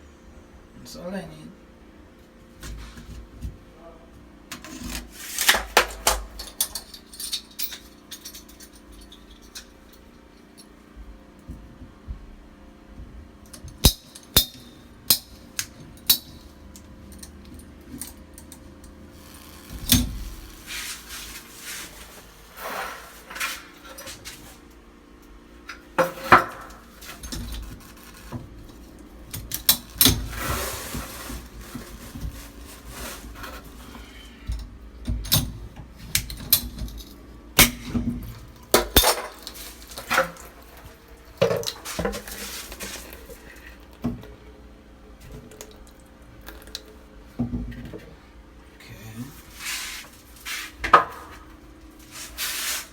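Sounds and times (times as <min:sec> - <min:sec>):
pipes and tools clattering: 0:13.5 - 0:18.5, 0:25.7 - 0:44.3
scraping: 0:19.3 - 0:24.6.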